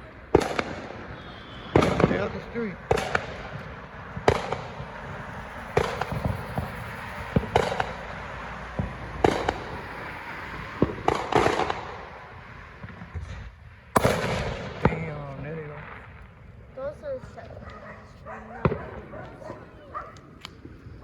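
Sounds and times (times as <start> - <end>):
fireworks bangs echoing: 0.0 - 21.0.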